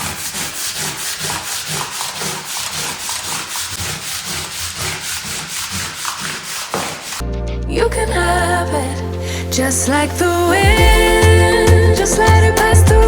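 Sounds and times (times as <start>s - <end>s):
brisk scrubbing: 0.0s - 7.2s.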